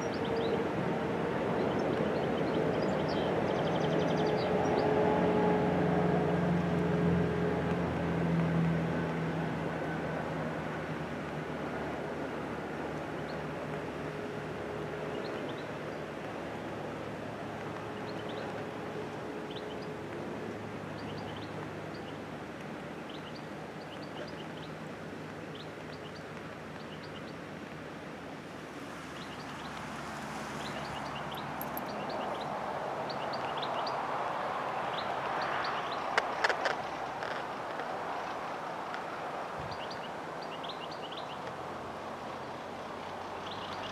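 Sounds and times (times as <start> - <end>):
low engine hum: 0.0 - 26.9.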